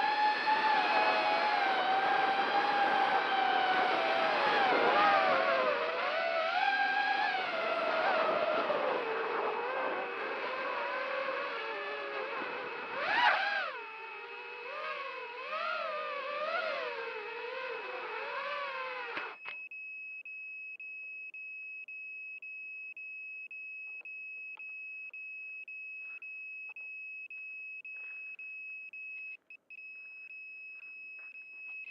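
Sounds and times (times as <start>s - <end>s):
quadcopter motors whining: 0.0s - 19.5s.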